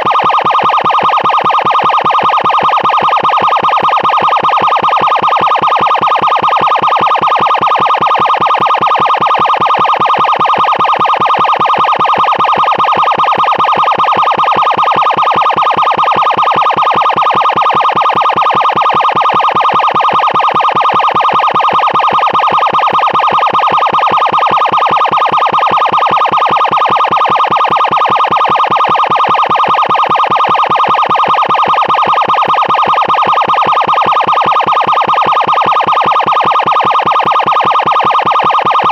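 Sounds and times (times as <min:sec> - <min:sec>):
electronic emergency siren: 0:00.0 - 0:38.9.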